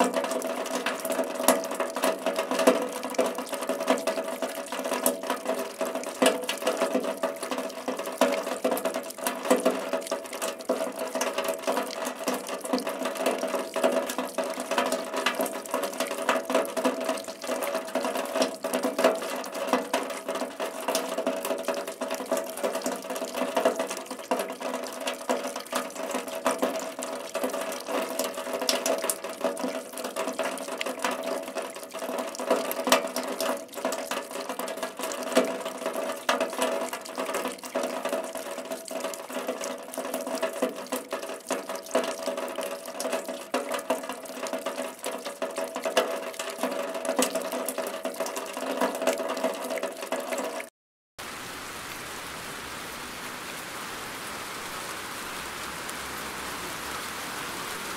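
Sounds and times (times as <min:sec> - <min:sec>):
rain drops pattering: 0:00.0 - 0:57.9
steady hum: 0:51.2 - 0:57.9.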